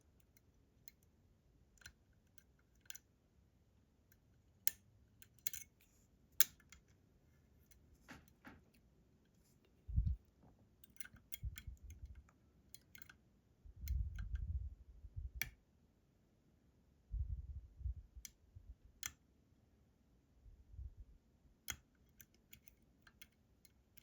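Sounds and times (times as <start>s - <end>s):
lock picks clicking and scraping: 0.0s - 3.1s, 4.0s - 8.9s, 10.0s - 13.2s, 13.8s - 14.5s, 21.7s - 24.0s.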